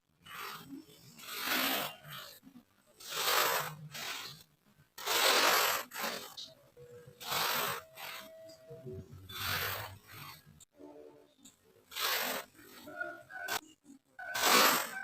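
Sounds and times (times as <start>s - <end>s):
sand scraping hiss: 0.3s - 2.3s, 3.0s - 4.4s, 5.0s - 6.6s, 7.2s - 8.4s, 9.3s - 10.5s, 11.9s - 13.6s, 14.3s - 15.0s.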